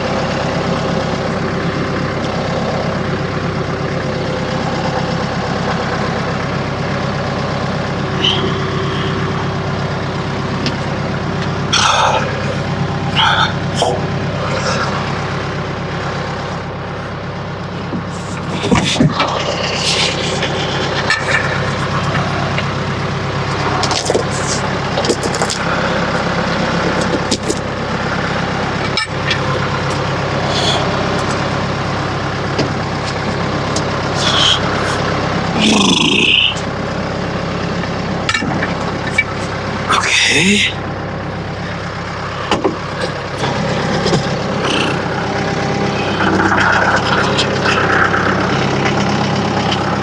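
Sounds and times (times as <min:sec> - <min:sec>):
vehicle engine running: 0:00.0 - 0:50.0
knocks and clanks: 0:17.9 - 0:22.7, 0:42.4 - 0:44.8.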